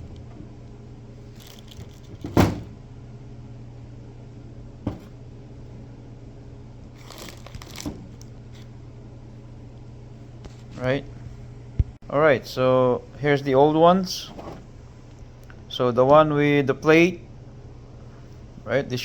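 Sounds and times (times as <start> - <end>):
steady low hum: 0.0 - 19.0
packaging rustling: 1.2 - 2.4, 7.0 - 8.3.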